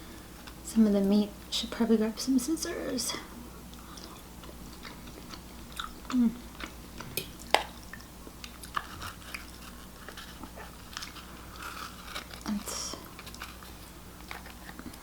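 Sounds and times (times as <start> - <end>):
chewing with wet mouth clicks: 3.7 - 11.2.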